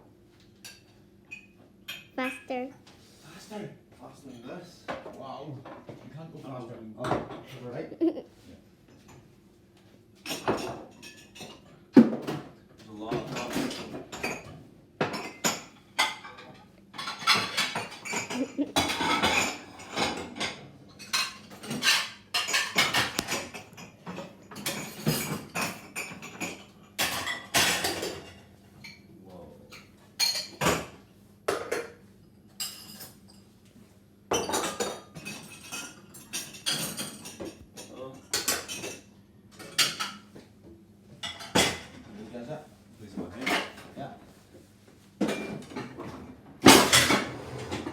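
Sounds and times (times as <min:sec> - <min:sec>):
dishes and cutlery clattering: 0:10.2 - 0:29.1, 0:29.7 - 0:32.0, 0:34.3 - 0:40.4, 0:41.1 - 0:42.3, 0:43.3 - 0:44.0, 0:45.2 - 0:47.9.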